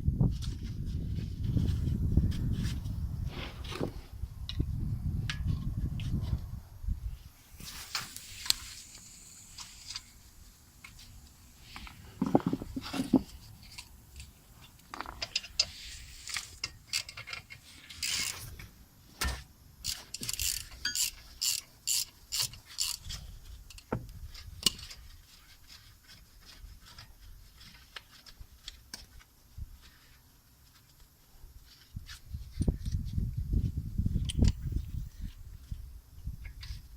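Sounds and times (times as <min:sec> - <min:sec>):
ratchet wrench bursts: 0:19.8 - 0:23.1.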